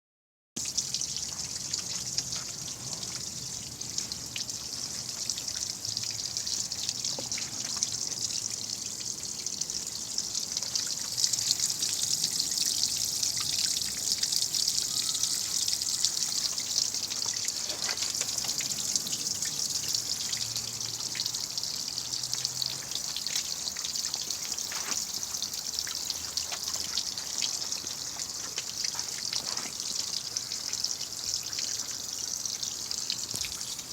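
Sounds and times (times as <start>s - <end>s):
water drips: 0.6s - 33.9s
water trickling and splashing: 0.6s - 33.9s.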